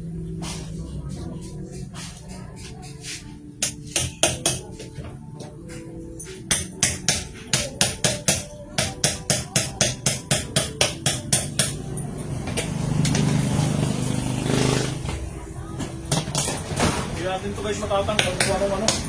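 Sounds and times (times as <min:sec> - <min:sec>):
hammer blows on metal: 0:06.5 - 0:11.8.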